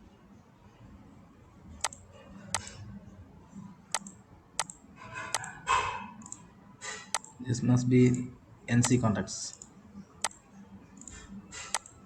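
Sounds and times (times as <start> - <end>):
faint steady hum: 0.0 - 12.0
computer clicks: 1.8 - 2.8, 3.9 - 5.6, 6.2 - 6.4, 7.1 - 7.4, 8.8 - 10.4, 11.0 - 12.0.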